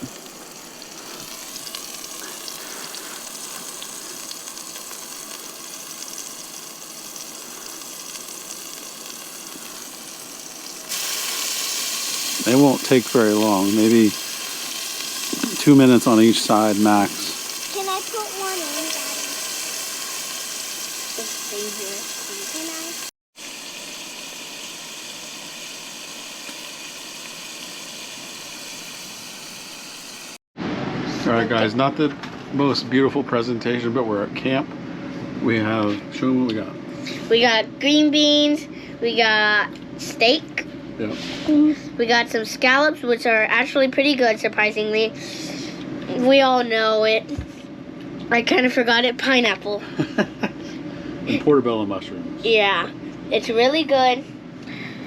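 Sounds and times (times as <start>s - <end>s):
scallops sizzling in a pan: 0.0s - 30.4s.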